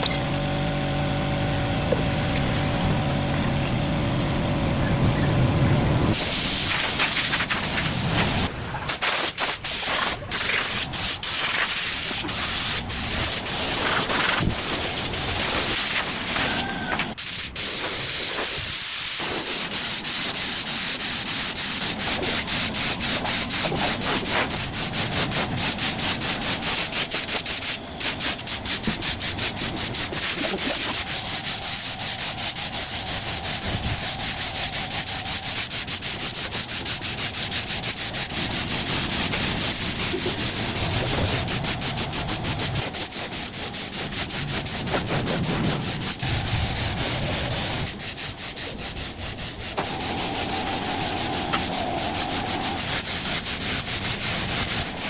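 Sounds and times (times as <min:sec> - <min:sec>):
rubbing and scraping: 0:05.1 - 0:55.0.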